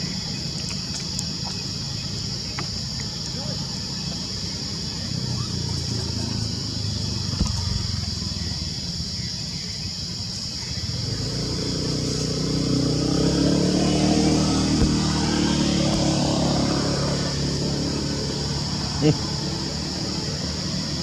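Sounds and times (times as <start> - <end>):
vehicle engine running: 4.5 - 9.2, 10.8 - 21.0.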